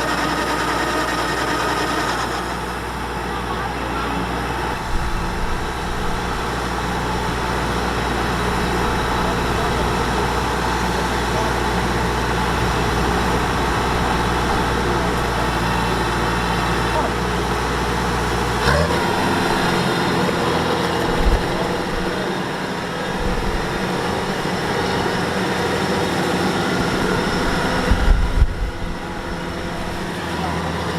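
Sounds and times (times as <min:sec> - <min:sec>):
engine knock: 0:00.0 - 0:02.7
diesel engine running: 0:00.0 - 0:30.9.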